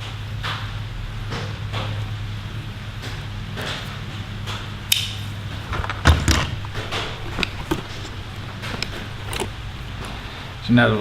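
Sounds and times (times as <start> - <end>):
steady low hum: 4.0 - 11.0
tools clicking and knocking: 5.0 - 10.6
heavy thump: 5.6 - 10.6.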